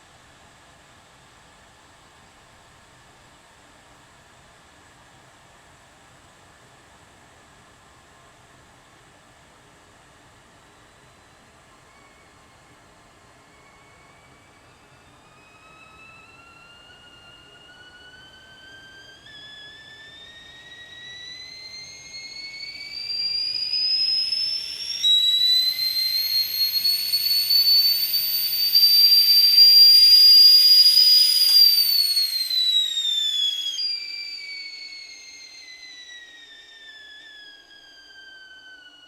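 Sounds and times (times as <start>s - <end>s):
kettle whistling: 10.6s - 39.0s.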